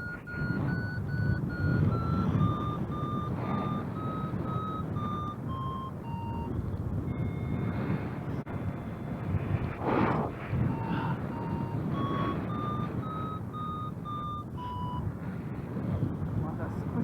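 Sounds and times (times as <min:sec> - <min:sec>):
steady electronic tone: 0:00.0 - 0:07.8, 0:10.2 - 0:15.0
variometer beeping: 0:00.0 - 0:16.3
wind buffeting microphone: 0:00.0 - 0:17.0.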